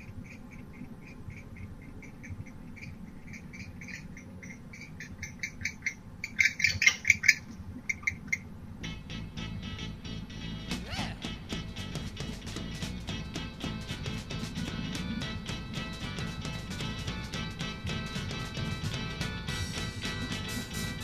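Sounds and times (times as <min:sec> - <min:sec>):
owl chittering calls: 0:00.0 - 0:08.5.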